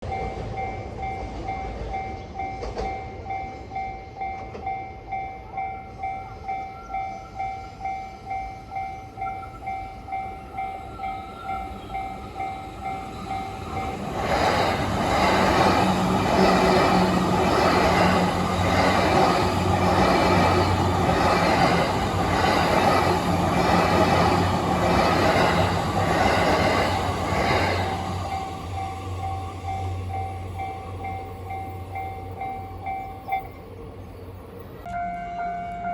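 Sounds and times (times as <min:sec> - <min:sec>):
level-crossing warning bell: 0:00.0 - 0:34.2, 0:34.8 - 0:35.9
train wheels clattering over rails: 0:12.8 - 0:32.7.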